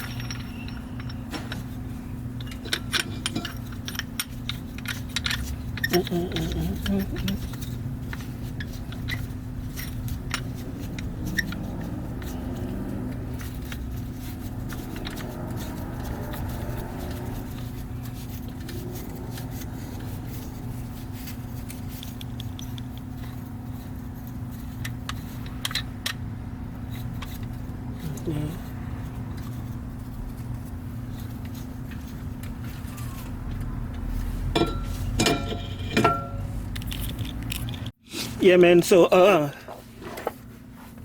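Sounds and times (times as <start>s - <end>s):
metal parts and tools clicking: 0.0s - 26.2s, 34.5s - 37.9s
steady low hum: 0.0s - 38.0s.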